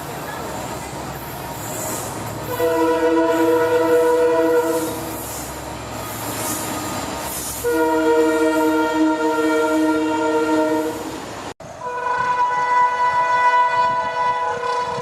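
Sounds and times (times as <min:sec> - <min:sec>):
train running noise: 0:00.0 - 0:15.0
locomotive horn blasts: 0:02.5 - 0:05.1, 0:07.6 - 0:11.1, 0:11.8 - 0:15.0.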